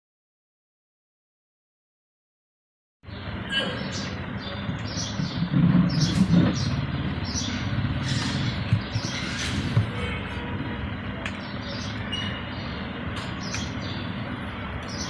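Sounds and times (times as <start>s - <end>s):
birds chirping: 3.0s - 15.0s
low mechanical hum: 3.1s - 15.0s.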